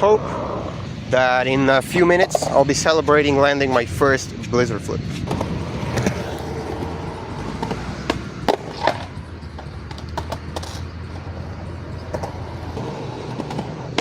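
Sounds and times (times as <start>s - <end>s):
skateboard wheels rumbling: 0.0s - 14.0s
skateboard clacks: 5.2s - 14.0s.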